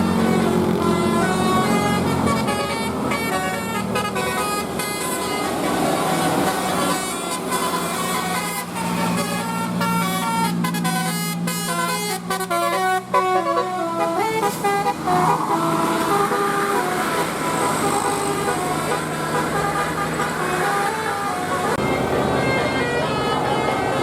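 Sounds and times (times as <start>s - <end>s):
multi-tone bus air horn melody: 0.0s - 24.0s.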